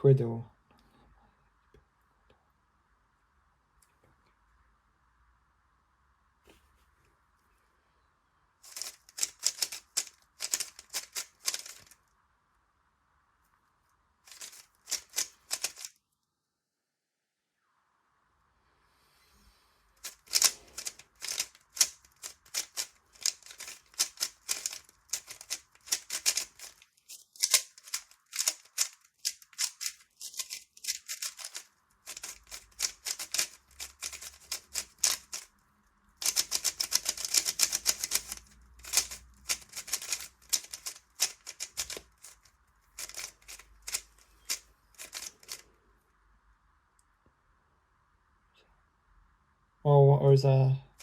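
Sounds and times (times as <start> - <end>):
speed cube clicking: 8.6 - 12.0, 14.3 - 16.0, 20.0 - 35.5, 36.2 - 45.6.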